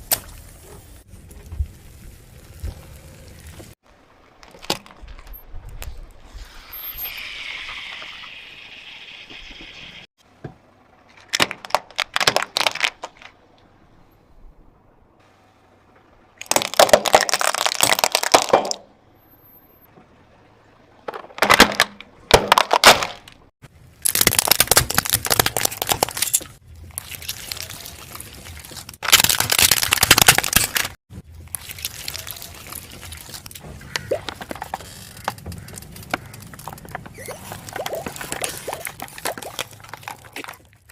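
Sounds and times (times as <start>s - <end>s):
objects crushed under car tyres: 11.1s - 13.3s, 16.4s - 18.8s, 21.1s - 40.9s.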